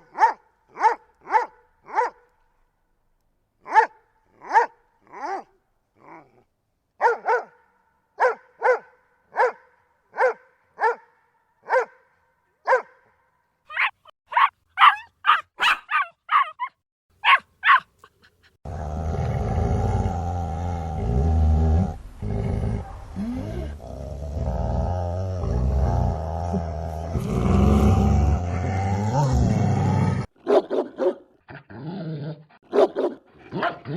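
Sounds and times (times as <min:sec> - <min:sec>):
dog barking deeply: 0:00.0 - 0:02.2, 0:03.6 - 0:06.3, 0:07.0 - 0:12.0, 0:12.6 - 0:13.0, 0:13.7 - 0:16.5, 0:22.5 - 0:23.8, 0:30.4 - 0:31.3, 0:32.6 - 0:33.9
puppy barking high-pitched: 0:00.0 - 0:02.2, 0:03.6 - 0:05.5, 0:07.0 - 0:12.0, 0:12.7 - 0:13.0, 0:13.7 - 0:18.0, 0:30.4 - 0:31.3, 0:32.7 - 0:33.8
dogs growling low: 0:18.6 - 0:30.3.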